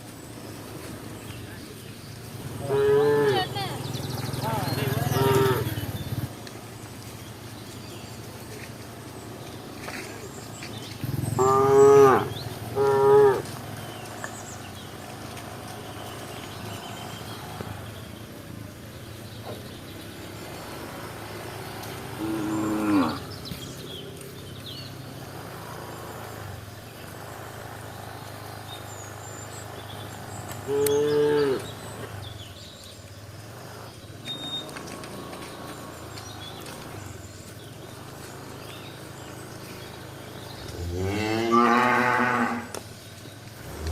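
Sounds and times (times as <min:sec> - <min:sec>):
cows mooing: 0:02.4 - 0:06.2, 0:11.0 - 0:17.9, 0:20.4 - 0:24.3, 0:30.4 - 0:32.2, 0:34.4 - 0:37.1, 0:40.4 - 0:42.8, 0:43.6 - 0:43.9.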